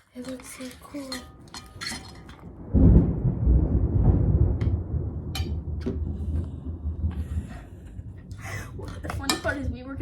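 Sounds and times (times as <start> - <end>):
spoons clinking on bowls: 0.2 - 2.4, 9.1 - 9.6
loud low rumble: 2.2 - 10.0.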